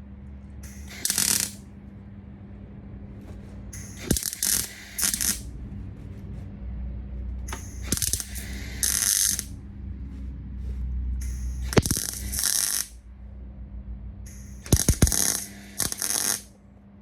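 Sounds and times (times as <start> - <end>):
steady low hum: 0.0 - 17.0
welding arc crackling: 0.6 - 1.6, 3.8 - 5.5, 7.5 - 9.6, 11.2 - 13.0, 14.3 - 16.5
sharp clicks: 14.3 - 16.5.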